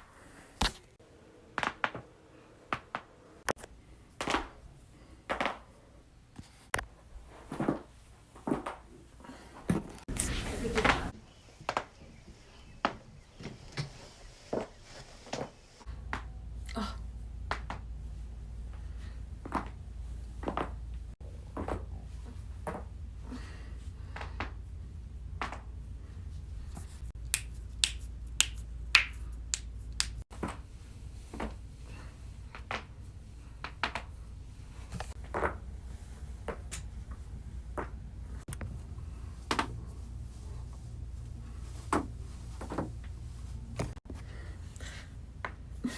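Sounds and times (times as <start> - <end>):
steady low hum: 15.6 - 45.9.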